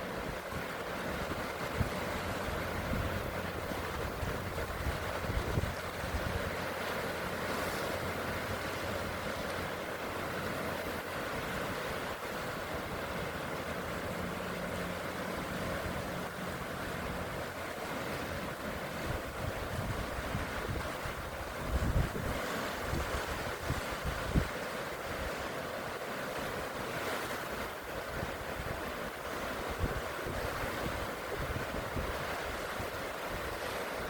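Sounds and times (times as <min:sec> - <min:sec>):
sea waves washing: 0:00.0 - 0:34.0
wind buffeting microphone: 0:00.2 - 0:06.6, 0:19.0 - 0:24.6, 0:29.7 - 0:33.6.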